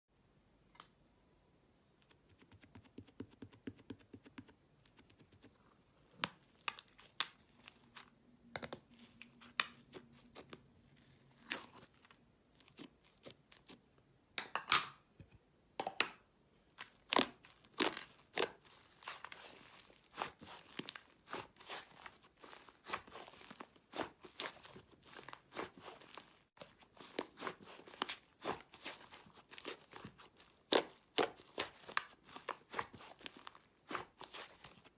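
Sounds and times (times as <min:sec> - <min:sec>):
slime crackling and tearing: 0:16.8 - 0:34.9.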